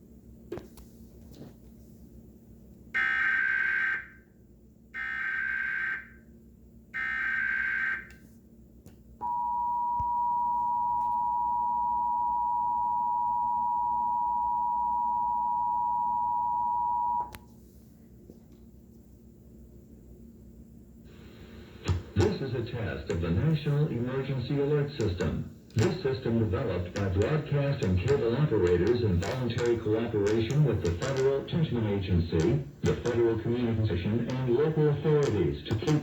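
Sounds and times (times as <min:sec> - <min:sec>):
steady two-tone attention signal: 0:09.2 - 0:17.3.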